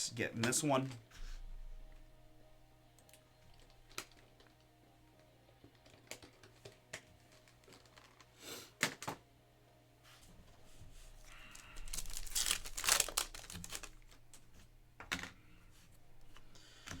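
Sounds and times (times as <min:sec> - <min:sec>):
faint background music: 0:00.0 - 0:17.0
trading cards clicking and tapping: 0:03.0 - 0:04.8, 0:05.5 - 0:09.2.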